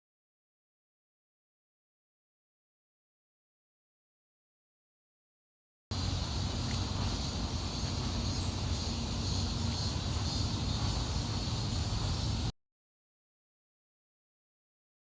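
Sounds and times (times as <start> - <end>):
low rumble: 5.9 - 12.5.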